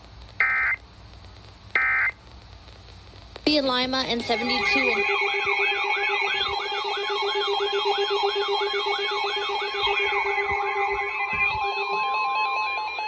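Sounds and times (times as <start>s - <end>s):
electronic alert siren tone: 4.3s - 13.0s.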